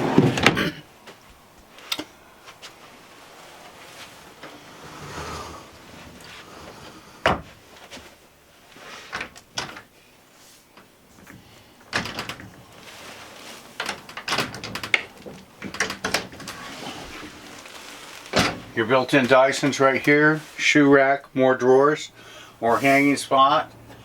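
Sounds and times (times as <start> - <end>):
drawers and doors opening and shutting: 0.0 - 0.8, 4.3 - 7.9, 9.0 - 9.9, 11.2 - 20.6.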